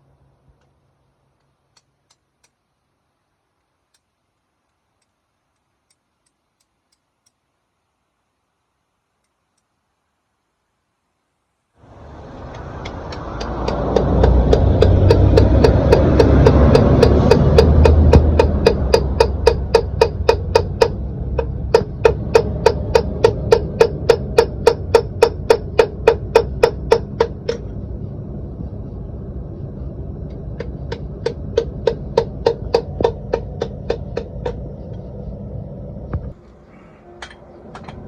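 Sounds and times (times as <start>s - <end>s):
loud low rumble: 11.8s - 38.0s.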